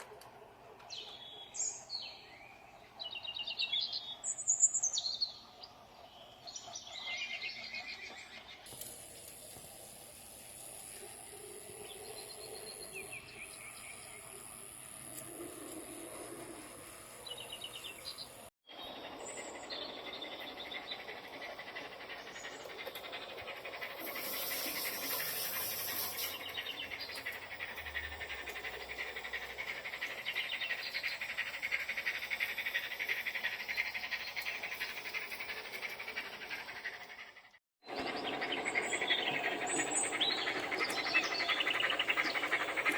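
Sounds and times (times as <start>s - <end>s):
birds chirping: 11.4s - 42.9s.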